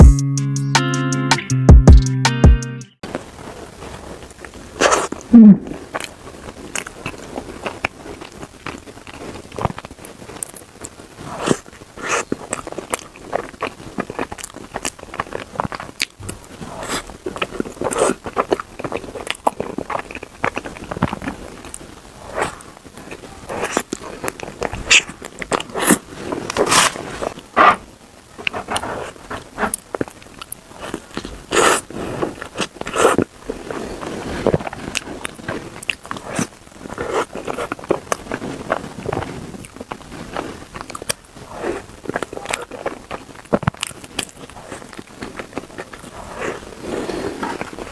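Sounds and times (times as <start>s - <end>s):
chewing and biting: 4.8s - 22.6s, 34.4s - 47.9s.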